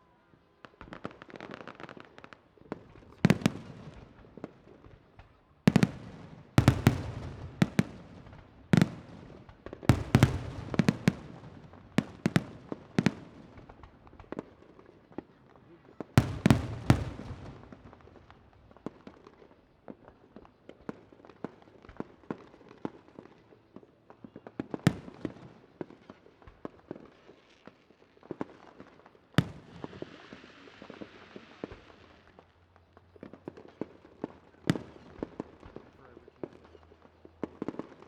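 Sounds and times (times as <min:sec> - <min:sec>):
fireworks pops and cracks: 0:00.5 - 0:38.0
loud firework bangs: 0:05.7 - 0:14.3, 0:16.2 - 0:18.1.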